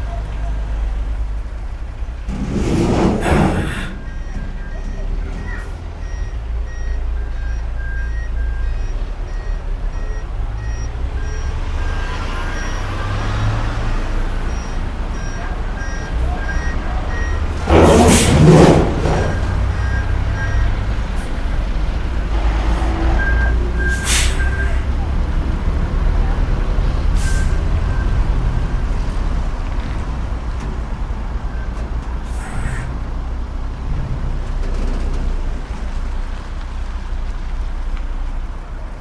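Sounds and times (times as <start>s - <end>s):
diesel machinery rumbling: 0.0s - 39.0s
backup alarm beeping: 3.2s - 13.2s, 13.9s - 18.3s, 19.0s - 20.9s.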